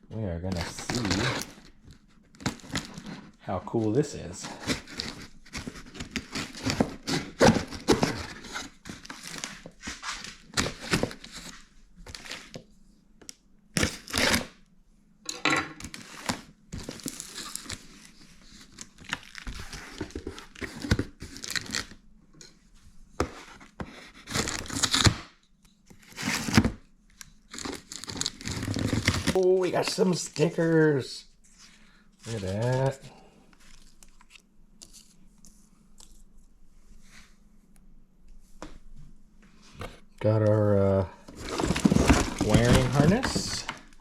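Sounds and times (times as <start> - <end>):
packing material crinkling: 0.5 - 12.6, 15.8 - 22.0, 24.2 - 25.1, 27.4 - 30.9, 41.2 - 44.0
tape and paper ripping: 0.6 - 1.6, 24.2 - 25.2, 27.5 - 29.4, 41.4 - 43.8.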